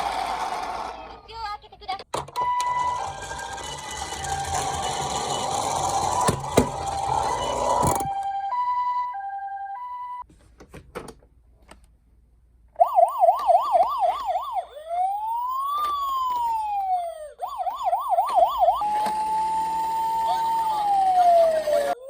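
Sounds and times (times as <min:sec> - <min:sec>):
police siren warble and wail: 0:02.4 - 0:10.2, 0:12.8 - 0:22.0
two-note ambulance siren: 0:02.4 - 0:10.2, 0:12.8 - 0:22.0.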